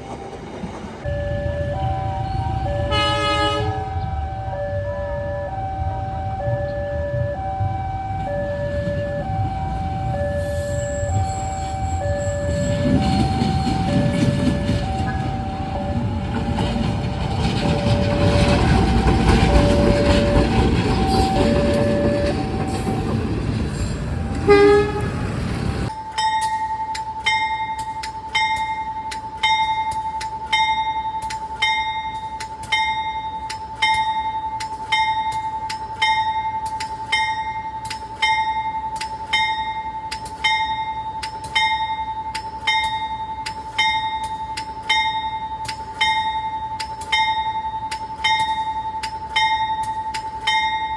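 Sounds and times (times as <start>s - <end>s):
train rail noise: 0.0s - 50.9s
train horn: 2.8s - 4.1s, 24.4s - 25.4s
locomotive warning bell ringing: 8.7s - 50.9s.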